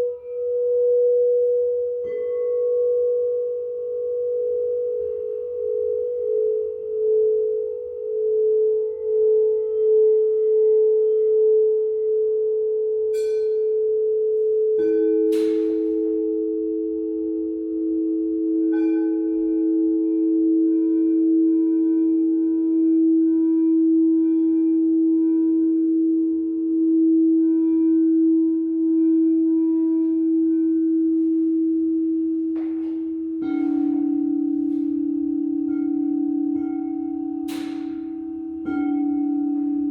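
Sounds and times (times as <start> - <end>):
singing bowls ringing: 0.0 - 39.9.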